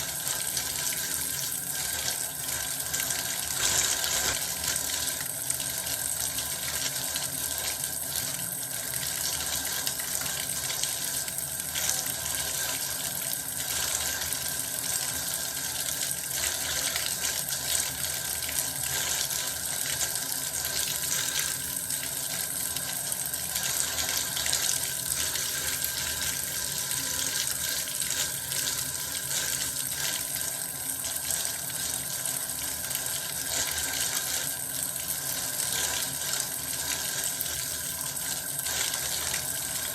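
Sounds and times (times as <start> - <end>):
bath water running: 0.0 - 39.9.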